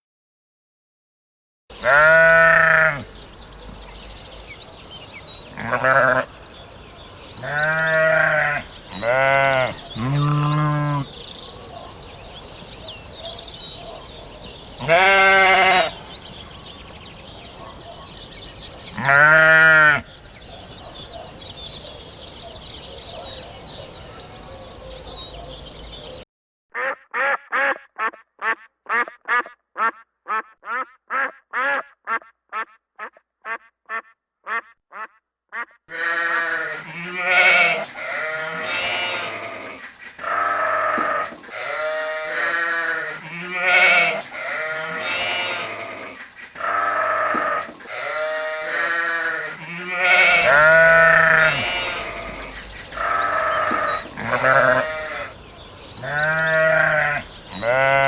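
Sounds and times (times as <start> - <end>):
flock of livestock bleating: 1.7 - 3.1, 5.5 - 6.5, 7.4 - 11.2, 14.8 - 16.2, 18.9 - 20.1, 35.9 - 55.4, 56.0 - 58.0
birdsong: 1.7 - 26.2, 35.9 - 58.0.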